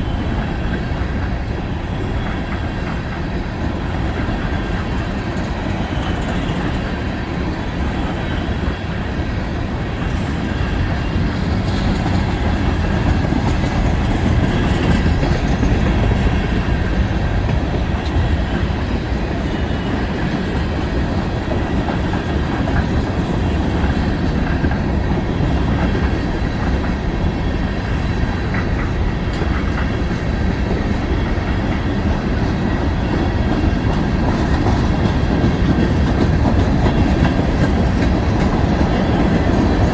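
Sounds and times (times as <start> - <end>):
freight train wheels on rail: 0.0 - 39.9.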